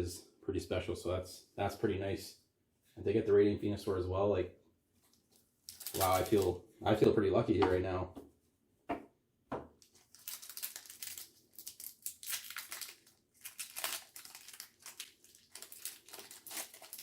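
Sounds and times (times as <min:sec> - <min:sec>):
foil wrapper crinkling and tearing: 0:05.6 - 0:06.6, 0:09.8 - 0:17.0.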